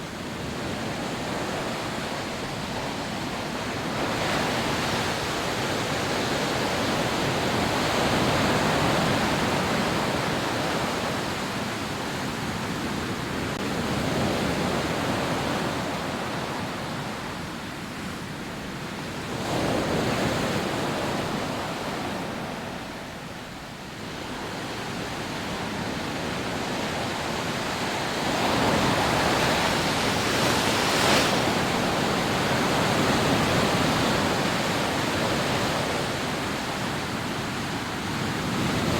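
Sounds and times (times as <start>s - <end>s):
sea waves breaking on beach: 18.8s - 38.9s.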